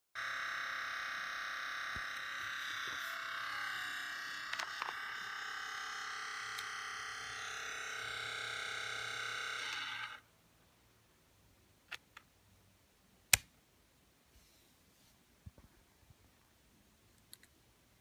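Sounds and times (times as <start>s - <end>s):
laptop high-pitched buzzing whine: 0.2s - 10.3s.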